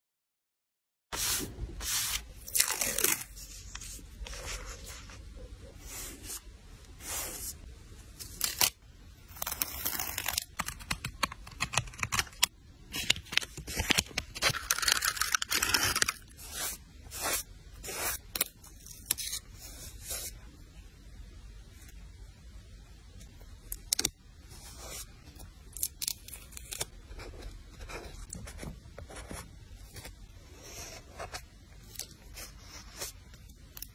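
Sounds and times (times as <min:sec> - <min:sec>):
paper tearing and peeling: 0:01.3 - 0:04.0, 0:08.2 - 0:18.5.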